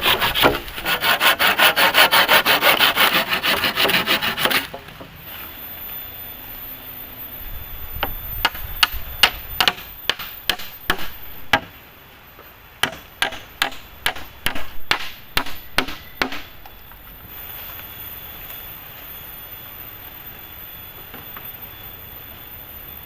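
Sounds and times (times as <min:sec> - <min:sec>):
hand tool striking wood: 0:08.0 - 0:11.7, 0:12.8 - 0:16.7.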